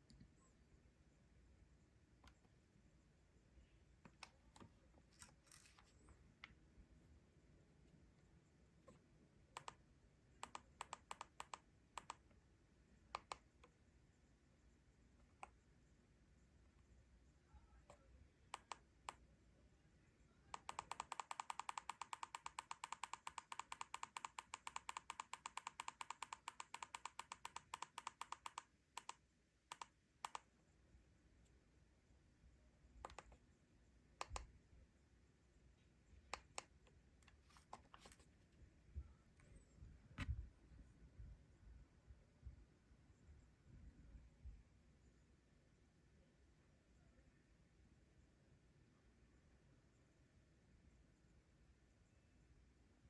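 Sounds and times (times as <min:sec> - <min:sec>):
faint sharp clicks: 0:34.2 - 0:34.5.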